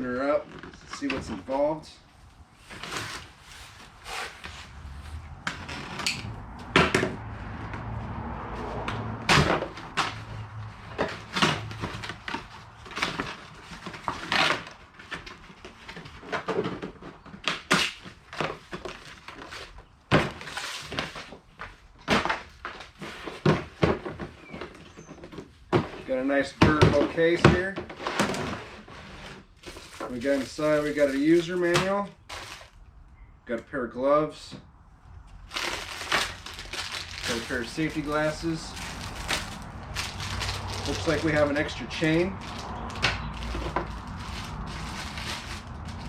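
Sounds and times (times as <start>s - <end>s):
packaging rustling: 29.4s - 32.8s, 35.3s - 46.0s.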